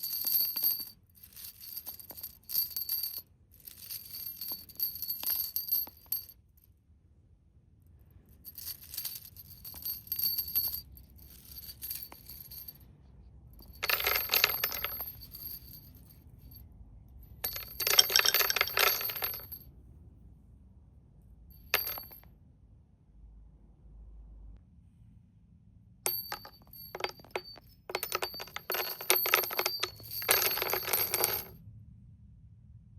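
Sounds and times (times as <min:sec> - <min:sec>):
nails clinking on hard surface: 0:00.0 - 0:06.4, 0:08.5 - 0:12.9, 0:13.6 - 0:16.1, 0:17.4 - 0:19.6, 0:21.6 - 0:22.3, 0:26.1 - 0:31.6.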